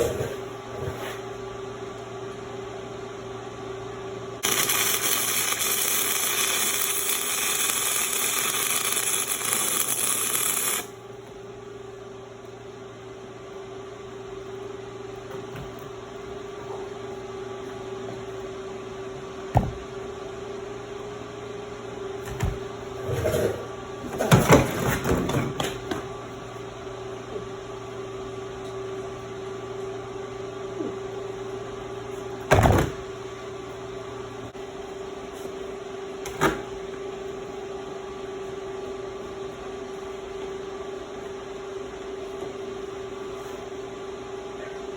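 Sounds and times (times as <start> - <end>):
steady low hum: 0.0 - 44.9
arc welding crackling: 4.4 - 11.0.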